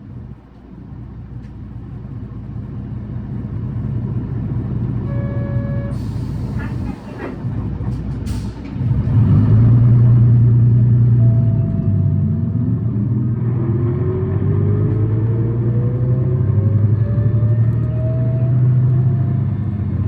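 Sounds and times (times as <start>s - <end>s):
bus engine revving: 3.3s - 20.0s
air brake hiss: 5.9s - 7.4s, 8.2s - 8.7s.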